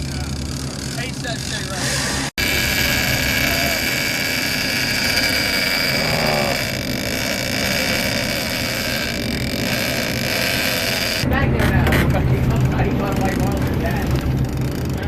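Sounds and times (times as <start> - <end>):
boat engines running: 0.0 - 15.0
high whine: 1.7 - 11.2.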